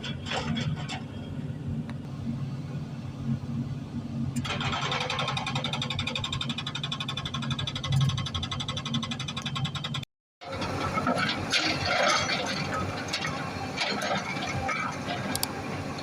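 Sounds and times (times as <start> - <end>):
excavator engine running: 0.0 - 16.0.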